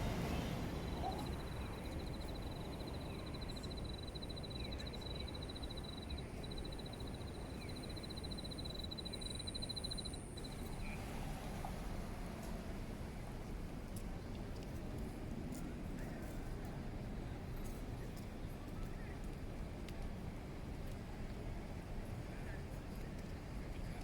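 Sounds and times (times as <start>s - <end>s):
low background noise: 0.0s - 24.0s.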